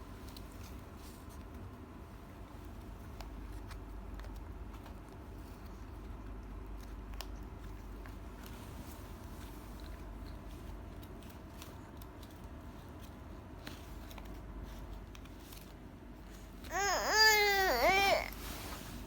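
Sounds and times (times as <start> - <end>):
baby babbling: 16.7 - 18.4.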